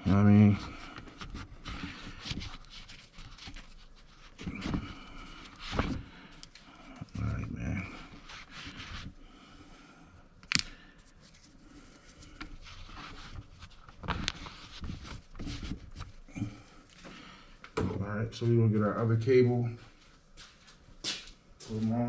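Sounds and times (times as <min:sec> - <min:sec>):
knocks and handling noises: 0:00.7 - 0:06.6, 0:12.2 - 0:18.0.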